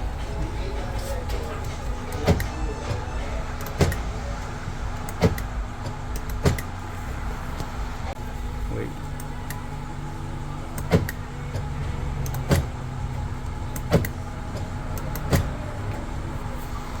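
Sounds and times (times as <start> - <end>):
steady low hum: 0.0 - 17.0
door lock actuator clacking: 1.6 - 4.2, 5.0 - 6.8, 10.7 - 12.8, 13.7 - 15.6.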